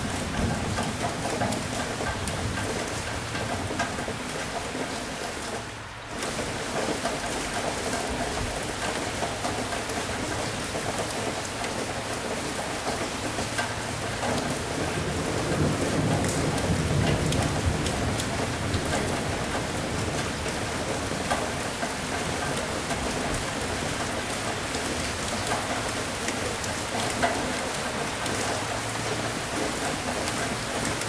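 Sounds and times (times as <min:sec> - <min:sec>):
heavy rain falling: 0:00.0 - 0:31.0
low thunder rumble: 0:14.8 - 0:21.3.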